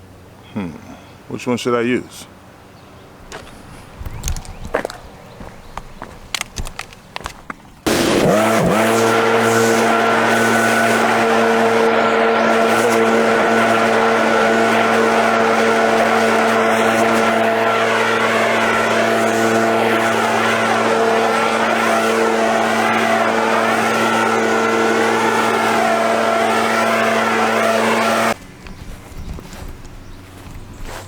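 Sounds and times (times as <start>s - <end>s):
lawn mower engine running: 4.8s - 31.0s
wavering higher whir: 7.9s - 28.4s.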